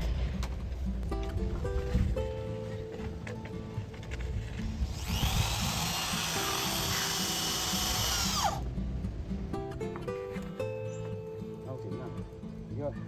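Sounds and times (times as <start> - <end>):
background music: 0.0 - 13.0
electric drill whining: 4.8 - 8.6.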